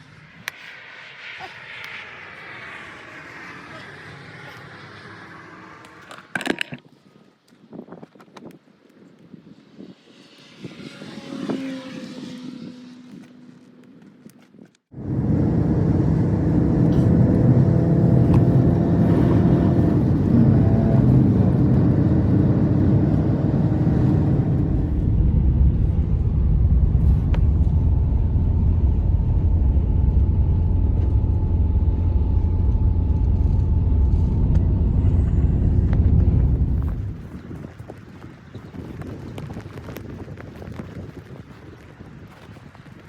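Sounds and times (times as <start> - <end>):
vehicle engine running loudly: 14.9 - 38.3.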